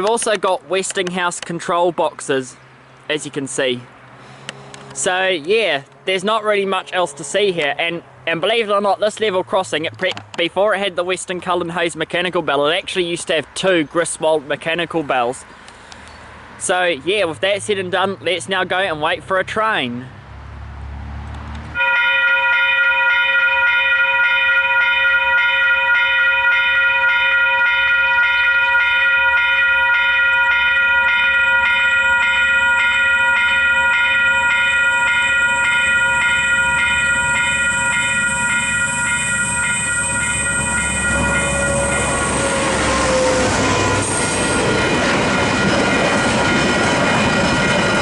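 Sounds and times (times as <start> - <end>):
level crossing bells ringing: 21.8 - 48.0
train rumble: 30.4 - 48.0.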